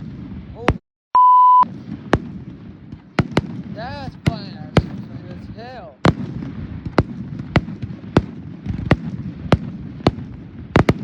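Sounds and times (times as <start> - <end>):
fireworks bangs: 0.0 - 0.8, 1.6 - 11.0
fireworks pops: 1.9 - 5.1, 6.0 - 11.0.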